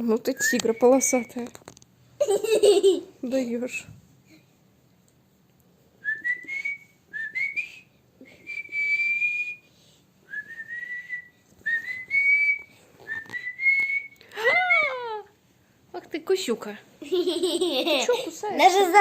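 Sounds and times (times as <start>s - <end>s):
person whistling: 6.0s - 9.7s, 10.3s - 14.6s.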